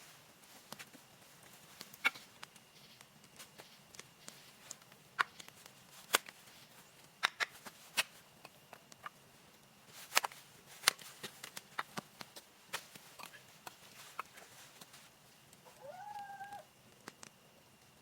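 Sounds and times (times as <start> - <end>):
sharp clicks and snaps: 16.9 - 17.9.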